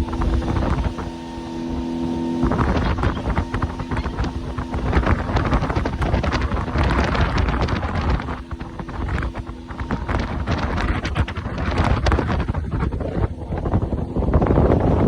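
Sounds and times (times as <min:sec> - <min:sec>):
speedboat engine and water noise: 0:00.0 - 0:15.0
wind buffeting microphone: 0:00.0 - 0:15.0.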